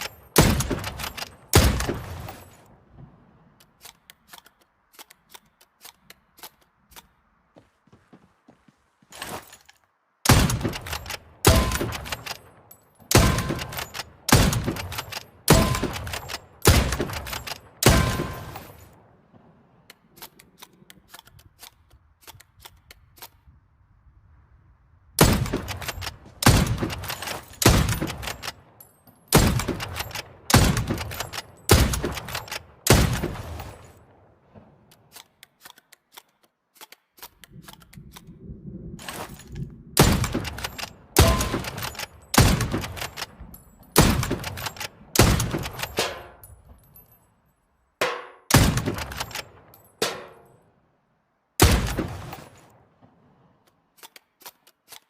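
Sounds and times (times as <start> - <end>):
rifle shots ringing out: 0.0 - 2.7, 10.2 - 19.4, 25.2 - 35.1, 40.0 - 46.5, 48.0 - 50.6, 51.6 - 53.5.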